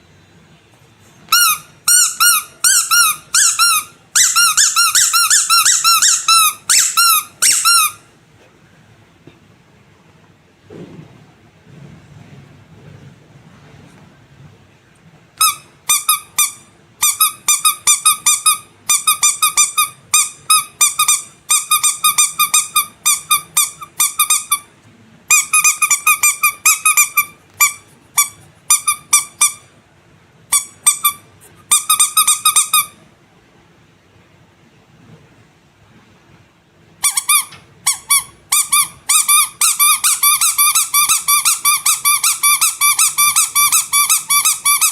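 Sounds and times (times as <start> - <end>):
squeaky rubber toy squeaks: 1.3 - 8.1, 15.4 - 24.7, 25.3 - 29.7, 30.5 - 33.0, 37.0 - 44.9.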